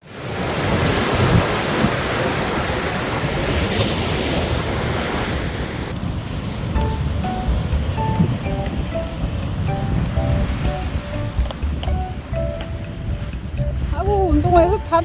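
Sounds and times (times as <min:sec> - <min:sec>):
sea surf on sandy beach: 0:00.0 - 0:15.0
wind buffeting microphone: 0:00.1 - 0:15.0
music: 0:06.8 - 0:15.0.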